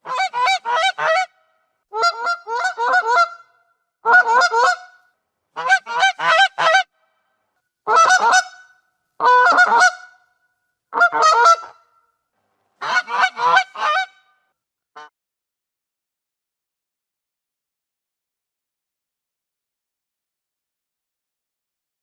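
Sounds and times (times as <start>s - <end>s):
goose honking: 2.0s - 3.4s, 4.1s - 4.9s, 7.9s - 8.6s, 9.2s - 10.2s, 11.0s - 11.8s, 12.8s - 14.2s.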